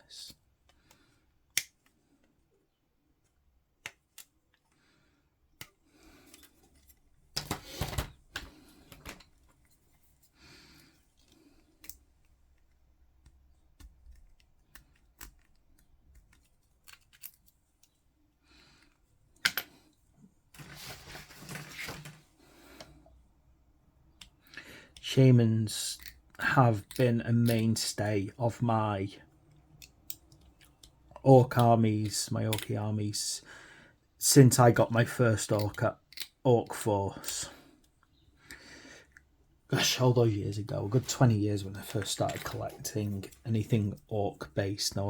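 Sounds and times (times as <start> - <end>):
plastic parts snipped and clicking: 11.2 - 18.0
plastic rustling and scraping: 20.5 - 22.8, 40.9 - 43.4.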